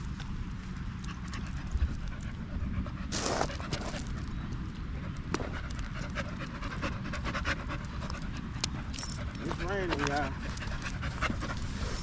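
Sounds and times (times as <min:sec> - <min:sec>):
steady low rumble: 0:00.0 - 0:12.0
dog panting: 0:05.0 - 0:12.0.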